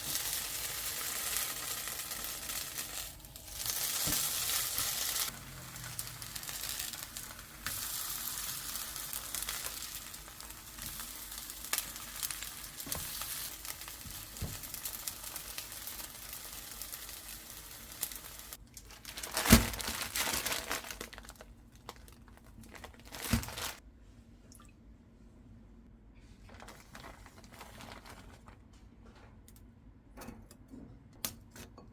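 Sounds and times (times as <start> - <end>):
food sizzling in a frying pan: 0.0 - 18.6.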